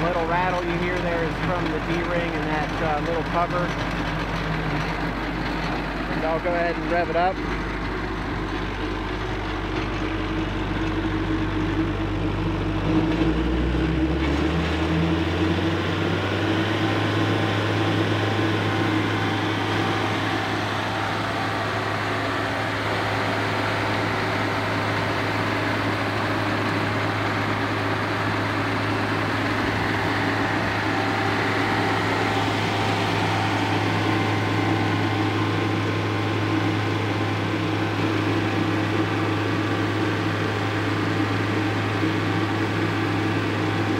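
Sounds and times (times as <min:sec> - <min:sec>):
cutting wheel spinning: 0:00.0 - 0:43.9
stump grinder diesel engine revving: 0:00.0 - 0:43.9.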